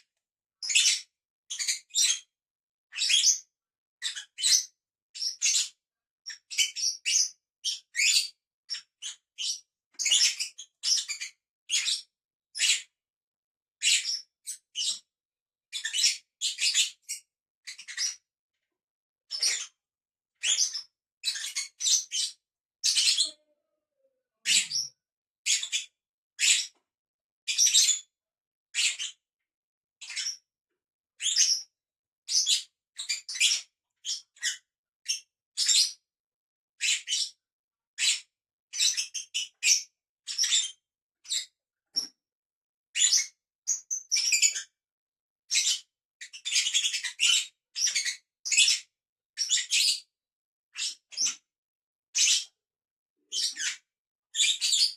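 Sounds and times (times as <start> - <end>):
lovebirds chirping: 20.4 - 24.9.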